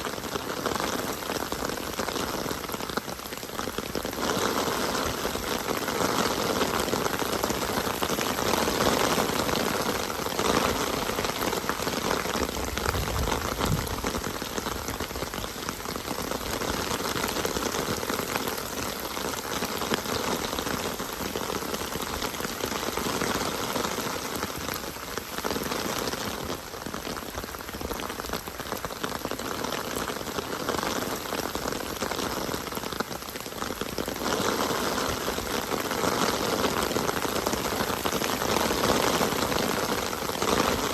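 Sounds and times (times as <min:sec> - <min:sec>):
rain falling: 0:00.0 - 0:40.9
running stream water: 0:04.4 - 0:23.9.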